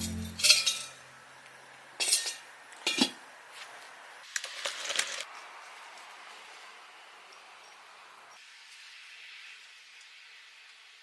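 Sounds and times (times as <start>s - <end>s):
faint steady hiss: 5.4s - 11.0s.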